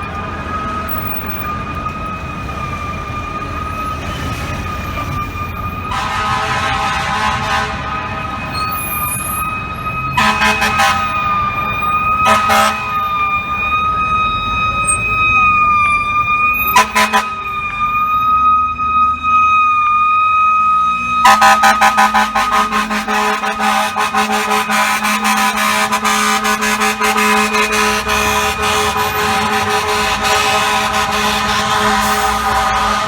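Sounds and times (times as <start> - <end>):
fire truck siren: 0.0 - 33.0
air horn blasts: 5.8 - 8.1, 10.2 - 11.4, 12.2 - 13.0, 16.8 - 17.5, 21.2 - 33.0.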